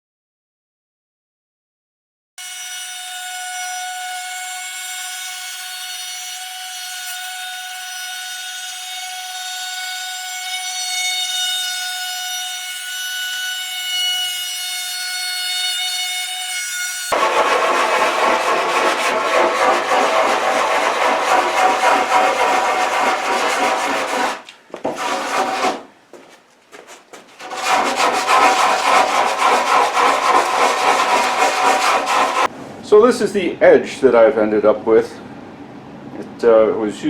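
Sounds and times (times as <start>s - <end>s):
router bit cutting wood: 2.4s - 25.8s, 27.4s - 32.5s
router whining: 27.4s - 32.5s.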